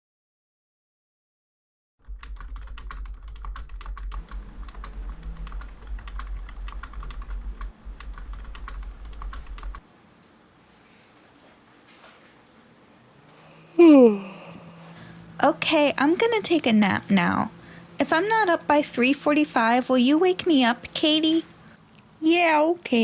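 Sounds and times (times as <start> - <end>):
keyboard typing: 2.1 - 9.8
steady low hum: 2.4 - 10.8, 12.4 - 23.0.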